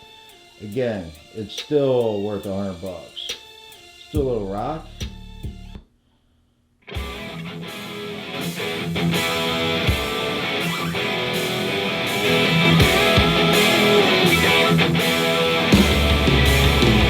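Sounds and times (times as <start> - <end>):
heavy bass: 4.2 - 5.8, 12.6 - 17.0
rock music with guitar: 6.9 - 17.0.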